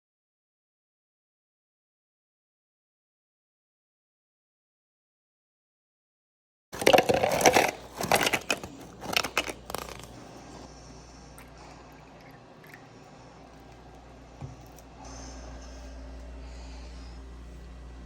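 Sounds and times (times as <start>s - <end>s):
frost crunching and crackling: 6.8s - 10.7s.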